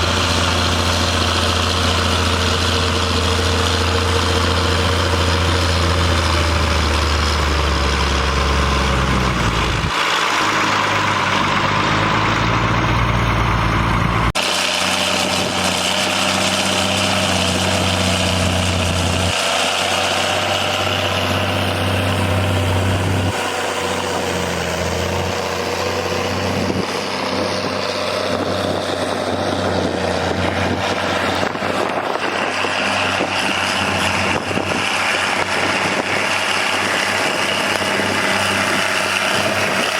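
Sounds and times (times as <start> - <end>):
tractor diesel engines running: 0.0 - 39.9.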